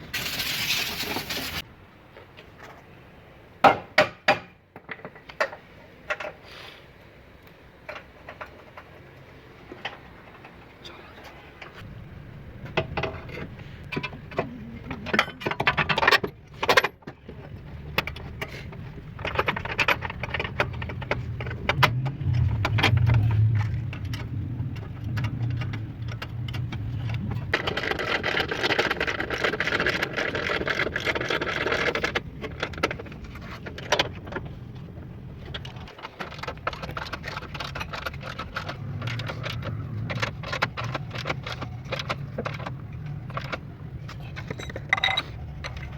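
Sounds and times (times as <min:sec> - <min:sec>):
low engine hum: 0:17.3 - 0:27.6
metallic clinking and rattling: 0:35.6 - 0:45.9.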